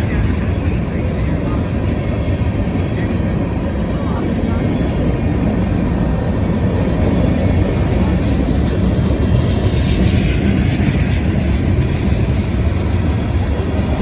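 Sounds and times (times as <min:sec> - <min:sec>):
freight train wheels rumbling: 0:00.0 - 0:14.0.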